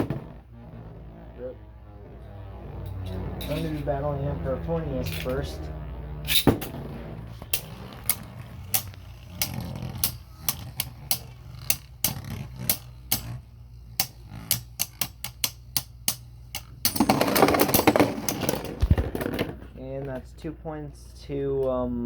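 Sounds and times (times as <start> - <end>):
spinning tops clicking on impact: 7.5 - 19.4.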